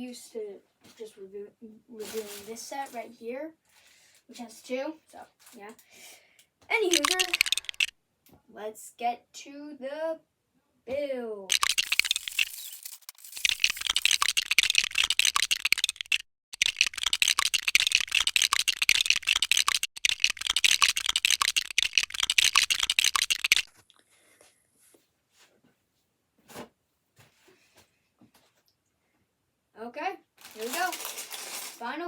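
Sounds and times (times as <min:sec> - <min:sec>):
plastic rustle: 0:02.0 - 0:05.8, 0:11.5 - 0:14.5, 0:30.4 - 0:32.0
plastic bricks clattering and clicking: 0:06.8 - 0:07.9, 0:11.5 - 0:23.7, 0:30.4 - 0:31.9.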